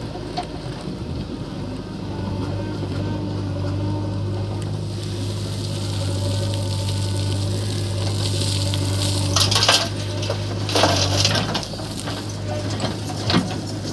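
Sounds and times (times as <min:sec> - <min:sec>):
diesel engine running: 0:00.0 - 0:13.9
bucket crunching and clattering soil: 0:04.2 - 0:13.9.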